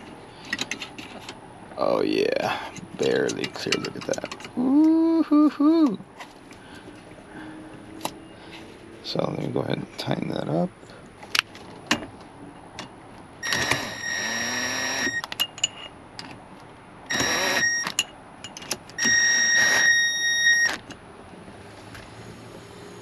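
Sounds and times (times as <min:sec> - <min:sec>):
cordless power tool whining: 0:13.4 - 0:15.3, 0:17.1 - 0:18.0, 0:19.0 - 0:20.8.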